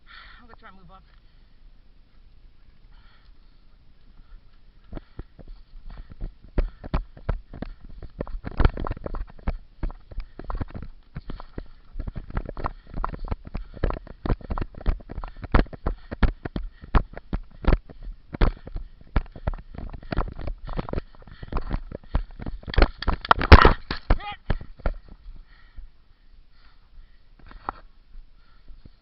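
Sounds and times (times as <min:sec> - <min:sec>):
gear jostling against camera: 0:02.6 - 0:25.4
footsteps: 0:02.7 - 0:25.9
thumps and rustling: 0:04.9 - 0:25.4.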